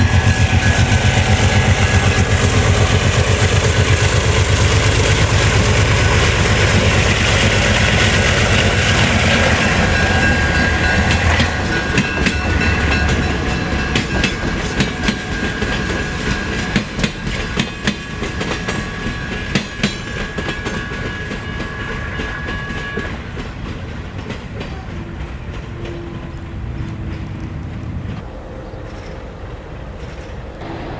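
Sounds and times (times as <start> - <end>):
high wheel squeal: 0.0 - 24.3
locomotive engine throbbing: 0.0 - 28.2.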